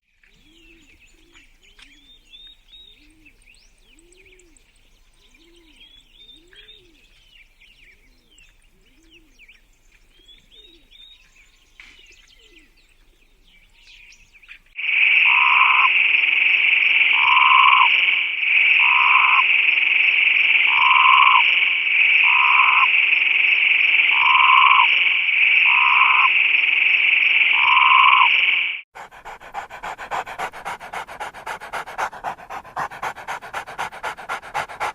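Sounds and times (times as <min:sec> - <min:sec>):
low pulsing call: 0:15.2 - 0:34.9
high-pitched animal chorus: 0:22.2 - 0:23.0, 0:24.1 - 0:26.3, 0:29.0 - 0:34.9
repeated low animal call: 0:29.0 - 0:34.9.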